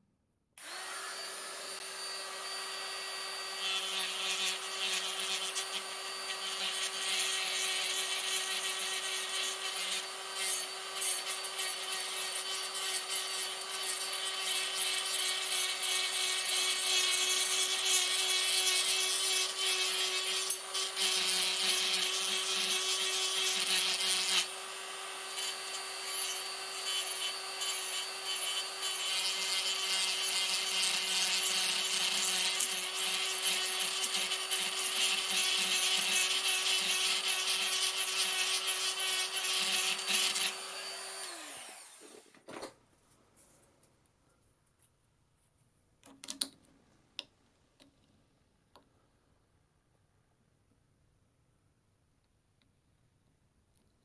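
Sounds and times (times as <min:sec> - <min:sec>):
electric power tool grinding: 0:00.6 - 0:42.3.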